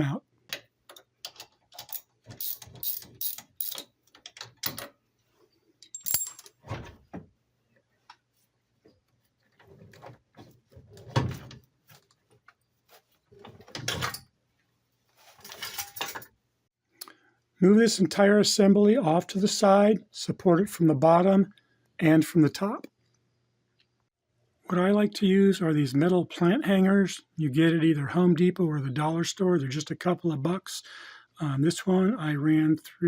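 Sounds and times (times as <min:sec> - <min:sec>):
metal clicks and knocks: 0:00.5 - 0:05.0
ratchet wrench clicking: 0:01.8 - 0:03.9.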